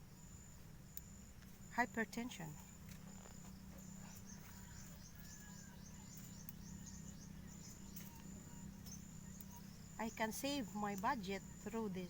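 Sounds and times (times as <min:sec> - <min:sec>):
insect trill: 0:00.0 - 0:12.0
low steady hum: 0:00.0 - 0:12.0.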